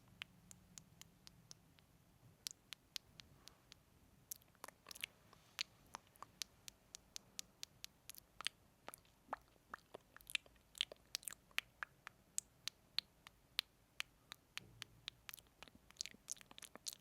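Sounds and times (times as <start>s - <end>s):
wet lip and tongue clicks: 0.0s - 17.0s.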